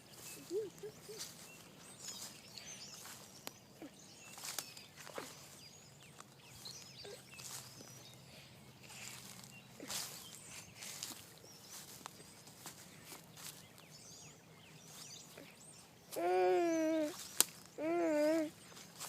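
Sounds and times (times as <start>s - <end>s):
soft rustling steps: 0.0s - 8.2s, 8.8s - 14.1s
small birds chirping: 0.0s - 19.0s.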